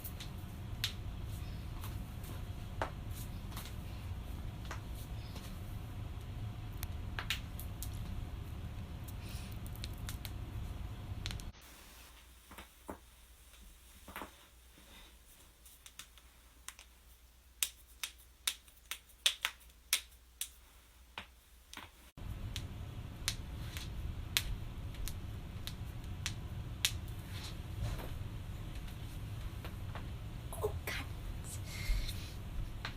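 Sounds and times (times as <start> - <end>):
joints cracking and popping: 17.6 - 20.6.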